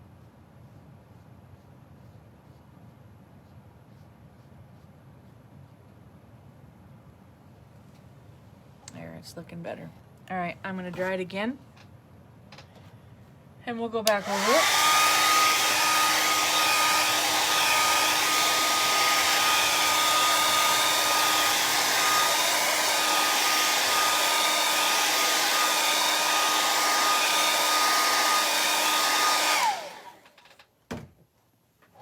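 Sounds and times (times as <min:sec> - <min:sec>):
hair dryer whining: 0:14.0 - 0:30.5.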